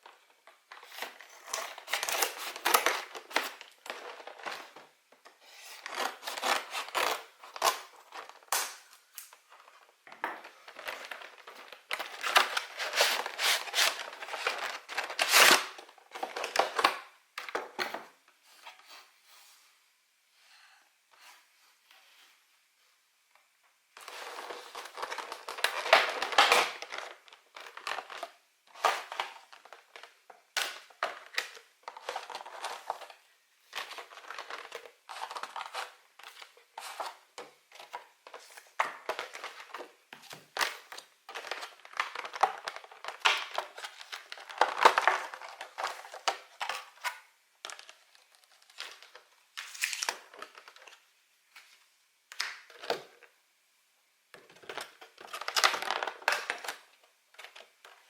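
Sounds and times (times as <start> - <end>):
packaging crinkling and tearing: 0.0 - 4.9, 5.6 - 9.9, 10.6 - 17.0, 24.0 - 51.0, 54.4 - 58.0.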